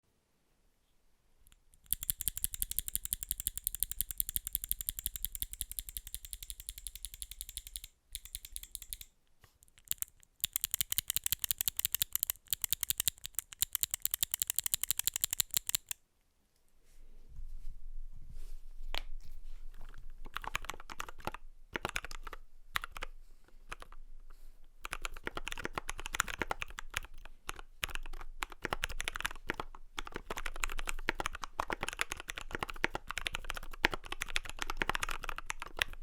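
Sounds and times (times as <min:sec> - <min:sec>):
fast typing on mechanical keyboard: 0:01.5 - 0:16.0, 0:20.3 - 0:23.1, 0:23.7 - 0:24.0, 0:24.8 - 0:36.0.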